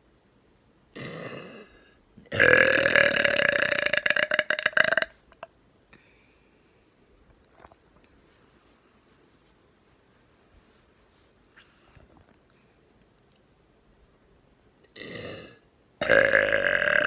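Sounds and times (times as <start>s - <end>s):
person burping: 1.0s - 1.7s, 2.3s - 5.5s, 14.9s - 17.0s.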